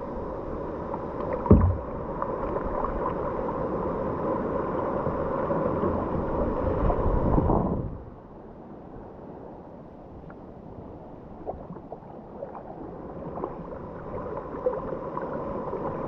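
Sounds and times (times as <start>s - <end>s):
water sloshing around kayak: 1.2s - 3.5s
sharp low thump: 1.5s - 2.0s.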